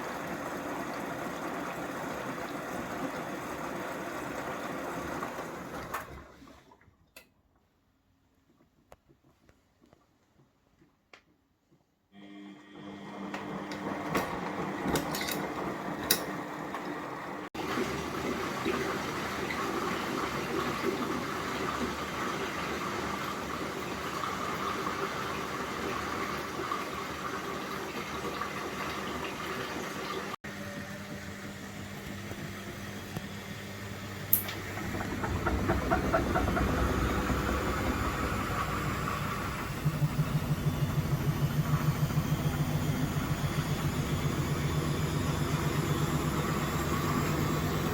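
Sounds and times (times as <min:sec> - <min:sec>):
washing machine humming: 0:00.0 - 0:07.2, 0:12.2 - 0:47.9
fast even pulsing: 0:34.6 - 0:46.8.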